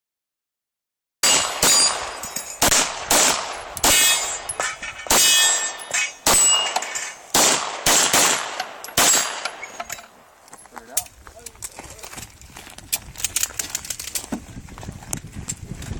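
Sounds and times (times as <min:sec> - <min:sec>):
rifle shots: 0:01.2 - 0:09.9
metallic ring: 0:03.9 - 0:07.3.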